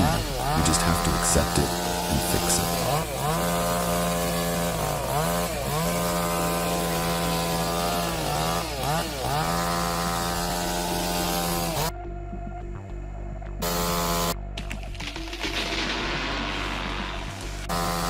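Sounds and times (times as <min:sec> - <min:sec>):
chainsaw cutting at high revs: 0:00.0 - 0:11.9, 0:13.6 - 0:14.4, 0:17.7 - 0:18.0.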